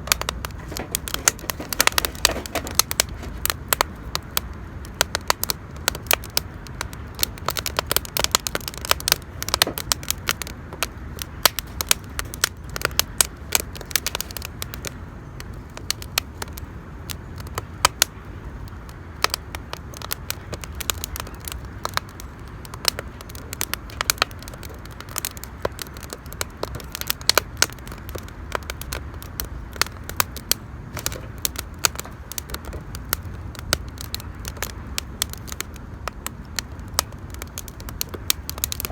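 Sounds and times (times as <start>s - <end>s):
campfire crackling and popping: 0.0s - 38.9s
low background noise: 0.0s - 38.9s.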